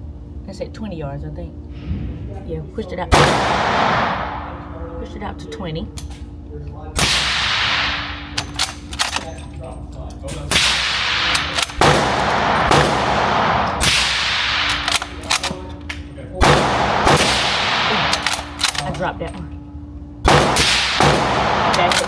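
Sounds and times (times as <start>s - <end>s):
ventilation hum: 0.0s - 22.0s
suppressed rifle shots ringing: 3.1s - 4.9s, 7.0s - 9.5s, 10.5s - 19.2s, 20.3s - 22.0s
sharp gunshot cracks: 3.2s - 4.6s, 7.0s - 8.4s, 10.5s - 15.4s, 16.4s - 18.8s.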